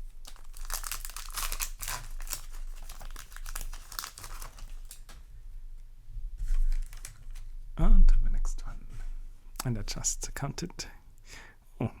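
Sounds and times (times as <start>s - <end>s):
foil wrapper crinkling: 0.0s - 5.2s, 6.6s - 7.4s.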